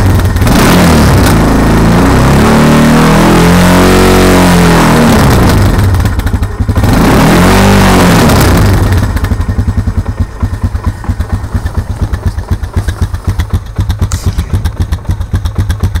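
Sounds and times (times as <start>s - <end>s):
engine knocking at idle: 0.0s - 0.6s, 5.5s - 7.0s, 8.3s - 16.0s
atv engine revving and idling: 0.0s - 16.0s.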